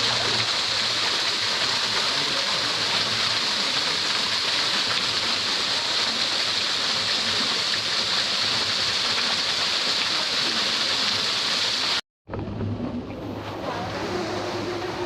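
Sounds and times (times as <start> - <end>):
waterfall rushing: 0.0 - 12.0
low water rush: 0.0 - 15.0.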